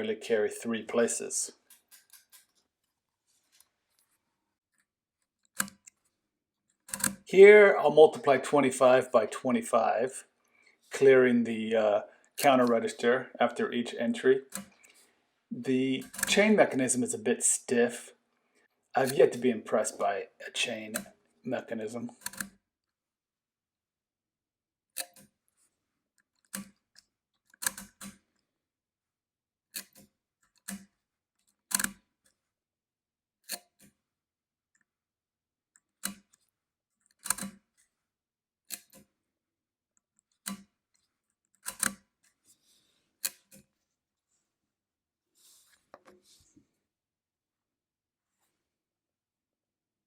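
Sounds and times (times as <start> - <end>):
adding machine clicks and clunks: 6.9 - 7.2.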